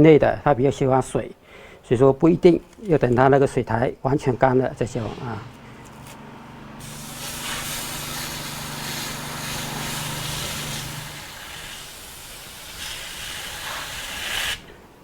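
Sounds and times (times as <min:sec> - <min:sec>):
hose water spraying: 0:05.0 - 0:14.8.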